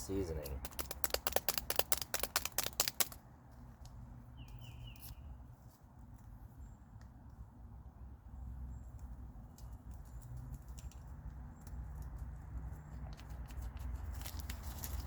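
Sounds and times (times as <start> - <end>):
seasoning shaker rattling: 0.4 - 3.1.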